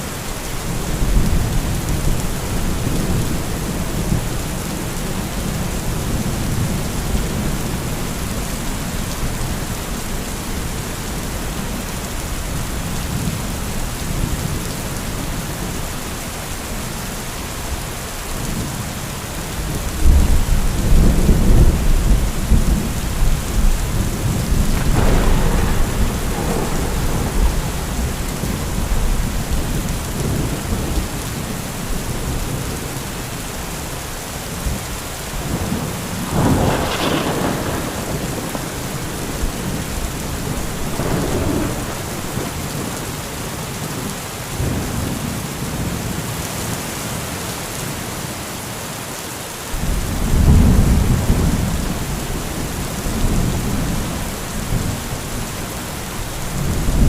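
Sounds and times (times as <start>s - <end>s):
heavy rain falling: 0.0s - 57.0s
rolling thunder: 19.6s - 32.7s, 34.6s - 43.3s, 49.8s - 57.0s
sharp thunderclap: 20.0s - 31.0s, 35.4s - 43.0s, 49.8s - 55.0s.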